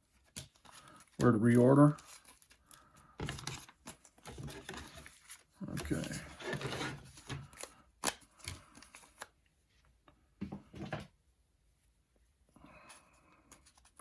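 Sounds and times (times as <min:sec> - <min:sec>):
packaging clicks and rustles: 0:00.2 - 0:09.4.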